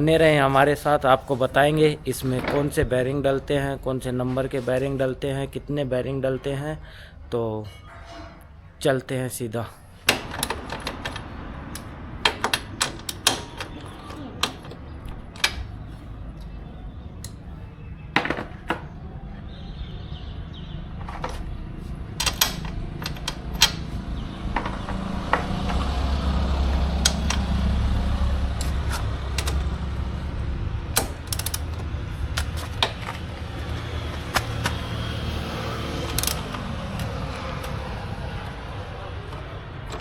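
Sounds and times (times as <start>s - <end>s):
metal parts clicking and clanking: 10.0s - 16.0s, 21.0s - 35.0s, 35.6s - 40.0s.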